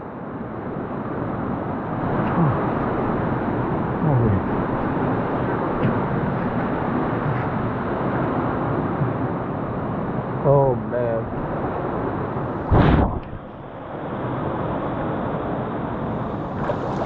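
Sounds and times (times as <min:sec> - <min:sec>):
river water and waterfall rushing: 0:13.9 - 0:17.0.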